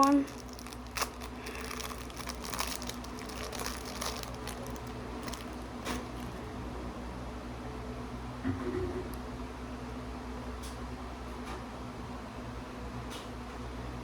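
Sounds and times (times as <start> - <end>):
plastic packaging crinkling: 0.0 - 6.5
small crackles: 0.0 - 6.5
steady low hum: 0.0 - 11.2.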